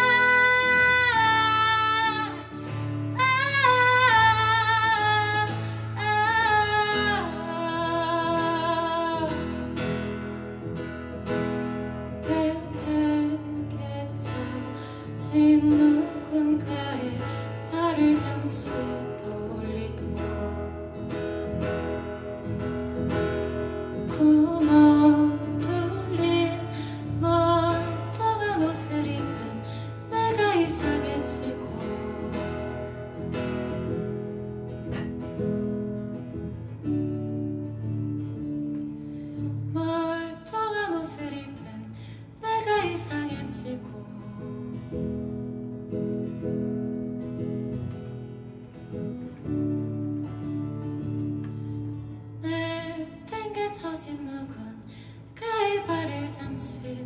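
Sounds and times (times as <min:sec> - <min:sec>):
woman singing with vibrato: 0:00.0 - 0:09.9, 0:12.2 - 0:21.2, 0:24.0 - 0:33.0, 0:39.7 - 0:45.1, 0:52.4 - 0:57.0
guitar: 0:00.0 - 0:57.0.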